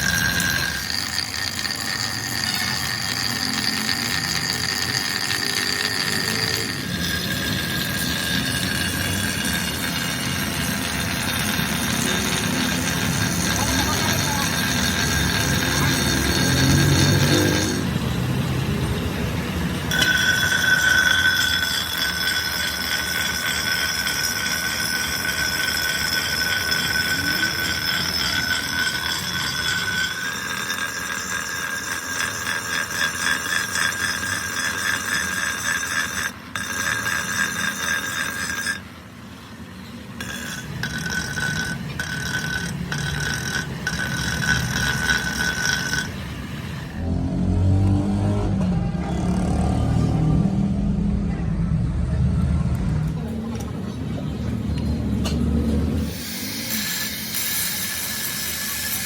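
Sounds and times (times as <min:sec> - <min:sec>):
machine tool whining and grinding: 0:00.0 - 0:51.2, 0:51.8 - 0:59.0.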